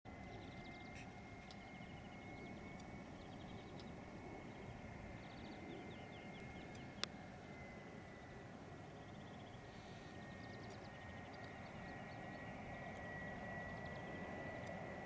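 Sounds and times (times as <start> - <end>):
thin steady high tone: 0.1 - 15.0
small birds chirping: 0.2 - 7.3, 8.1 - 14.8.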